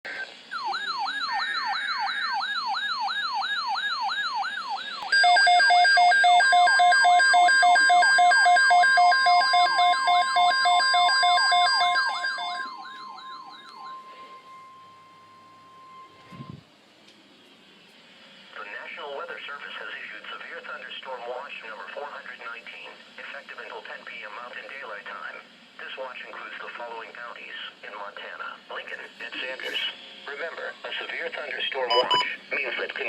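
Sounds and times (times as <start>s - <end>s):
steady alarm tone: 0.1s - 16.6s, 31.9s - 32.4s
two-tone hi-lo alarm: 0.1s - 16.6s, 31.9s - 32.3s
siren-like wail: 0.5s - 5.2s.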